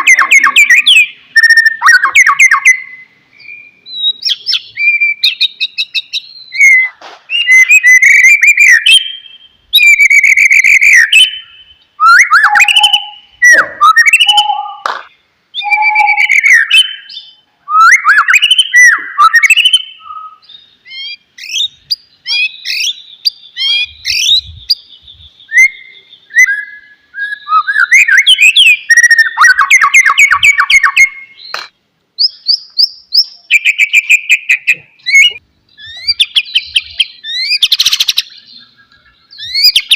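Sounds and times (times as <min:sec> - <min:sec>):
bird singing whistles and trills: 0:00.0 - 0:39.9.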